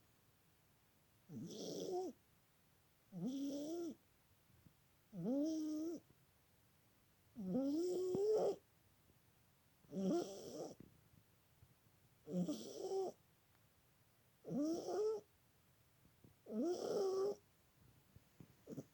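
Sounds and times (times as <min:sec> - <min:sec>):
cat snoring: 0:01.3 - 0:02.2, 0:03.1 - 0:04.0, 0:05.1 - 0:06.0, 0:07.4 - 0:08.6, 0:09.9 - 0:10.8, 0:12.3 - 0:13.2, 0:14.4 - 0:15.2, 0:16.4 - 0:17.4, 0:18.6 - 0:18.9.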